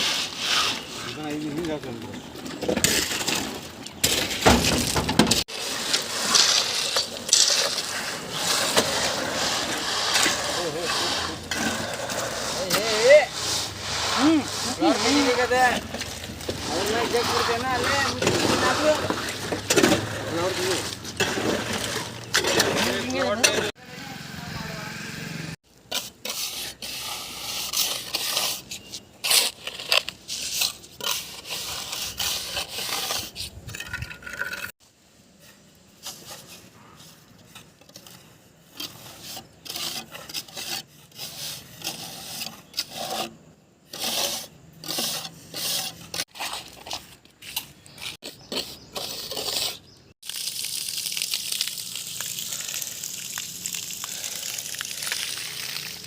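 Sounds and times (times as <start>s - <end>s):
scraping on a hard surface: 0.0s - 23.8s, 25.9s - 34.8s, 35.4s - 50.1s.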